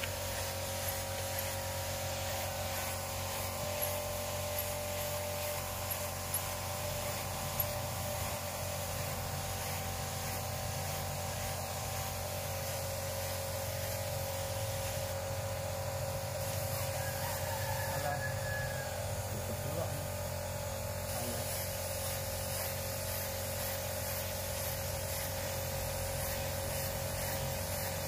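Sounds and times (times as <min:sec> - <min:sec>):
steady mechanical hum: 0:00.0 - 0:28.0.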